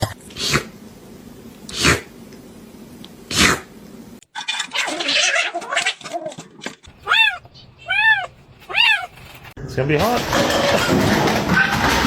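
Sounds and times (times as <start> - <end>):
cat screaming: 6.9 - 9.2.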